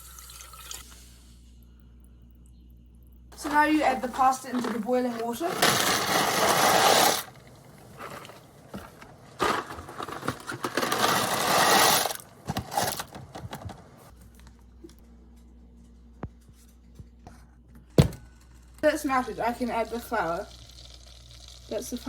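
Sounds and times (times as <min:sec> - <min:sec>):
faint low hum: 0:00.1 - 0:05.6
dry pasta rattling into pot: 0:03.4 - 0:07.2, 0:09.4 - 0:12.9.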